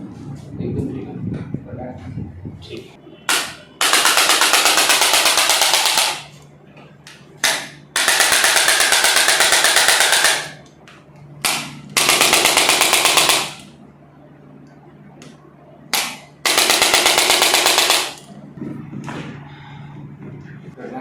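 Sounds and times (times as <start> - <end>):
electric percussion device hammering: 3.3 - 6.4, 7.4 - 10.6, 11.4 - 13.7.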